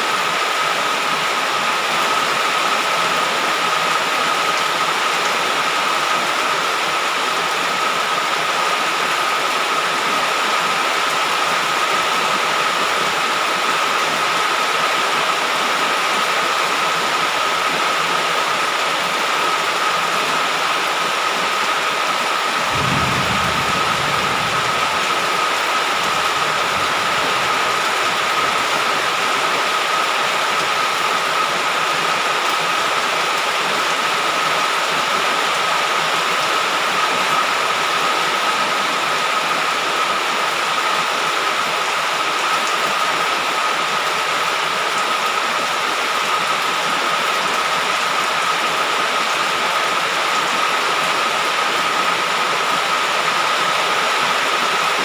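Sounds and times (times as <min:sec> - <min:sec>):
heavy rain downpour: 0:00.0 - 0:55.0
low rumble: 0:22.7 - 0:28.2.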